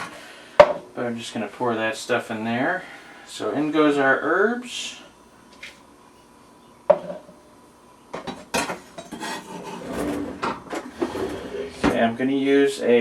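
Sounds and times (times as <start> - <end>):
clinks and scrapes: 8.6 - 11.6.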